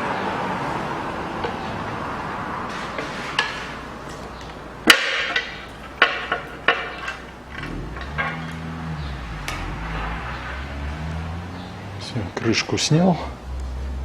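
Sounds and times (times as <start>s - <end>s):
low steady hum: 7.2s - 12.0s.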